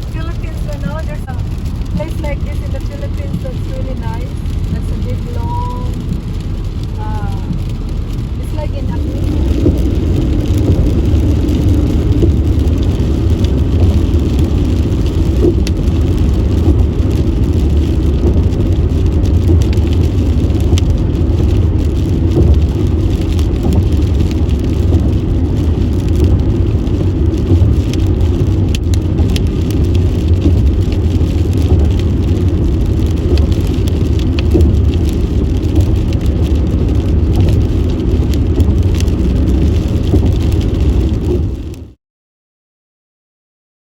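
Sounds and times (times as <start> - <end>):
faint rain ticks: 0.0 - 42.0
tyres and engine rumble: 0.0 - 42.0.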